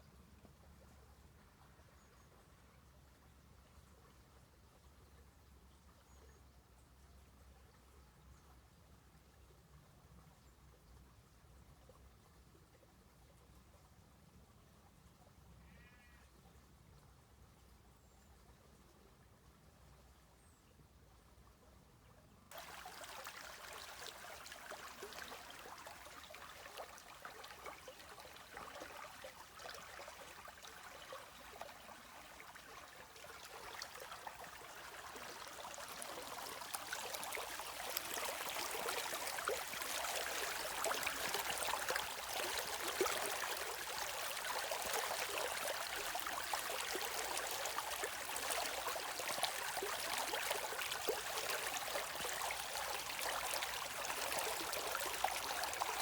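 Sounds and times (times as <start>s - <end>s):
stream water running over stones: 22.5s - 56.0s.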